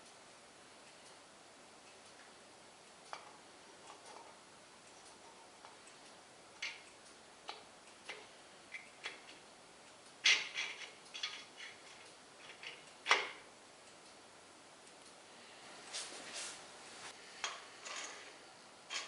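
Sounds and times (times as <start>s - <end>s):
metal parts clattering: 10.2s - 12.7s, 17.8s - 19.0s
metallic clicks of tools and parts: 10.2s - 13.4s.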